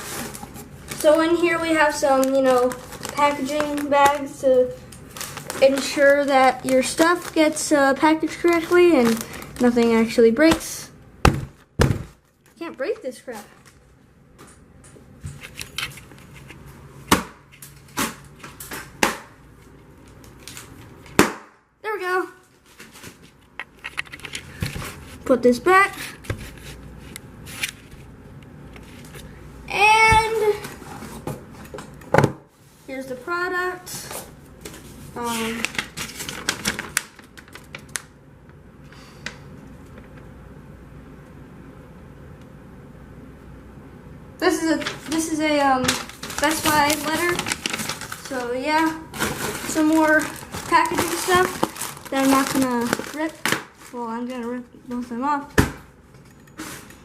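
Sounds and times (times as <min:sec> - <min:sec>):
plastic packaging crackling: 0:00.0 - 0:10.9, 0:17.6 - 0:21.2, 0:34.6 - 0:38.2, 0:44.6 - 0:55.0
low room noise: 0:00.0 - 0:57.0.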